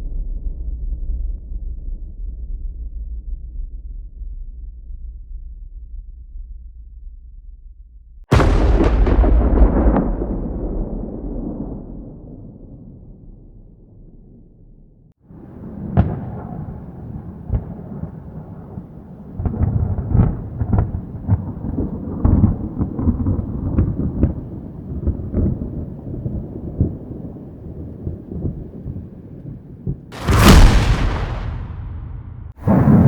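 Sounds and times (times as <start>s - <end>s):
sharp thunderclap: 8.3s - 12.7s, 15.4s - 18.8s, 30.2s - 33.0s
thunder rumbling: 8.3s - 12.9s, 15.4s - 29.0s, 30.2s - 33.0s.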